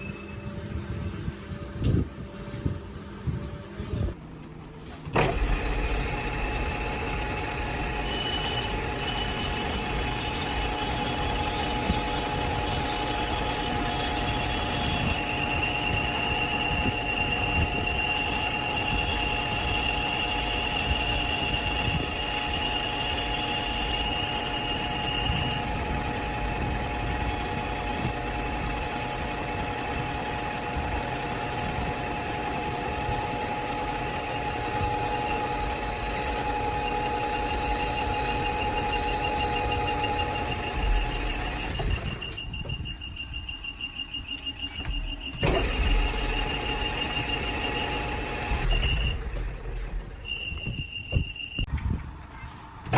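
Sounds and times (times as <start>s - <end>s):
metal lathe humming: 5.2s - 49.3s
high-pitched cutting whine: 5.5s - 49.3s.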